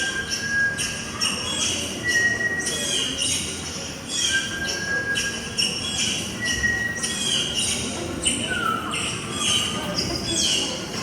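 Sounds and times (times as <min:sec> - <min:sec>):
birds chirping and whistling: 0:00.0 - 0:11.0.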